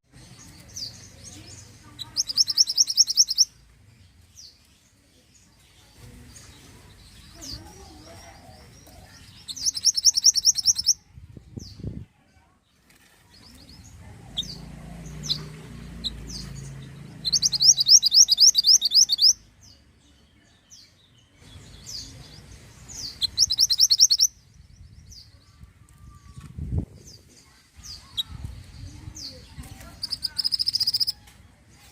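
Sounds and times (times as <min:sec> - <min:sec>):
bird chirps: 0:00.1 - 0:11.9, 0:13.3 - 0:25.6, 0:27.0 - 0:31.6
bird trilling: 0:01.9 - 0:03.6, 0:08.4 - 0:11.0, 0:14.3 - 0:19.4, 0:22.9 - 0:24.4, 0:29.9 - 0:31.2.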